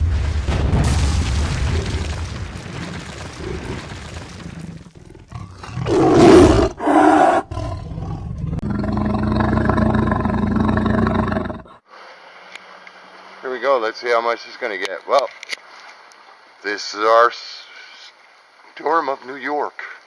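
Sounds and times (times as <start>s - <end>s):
big cat roaring: 3.4s - 11.8s.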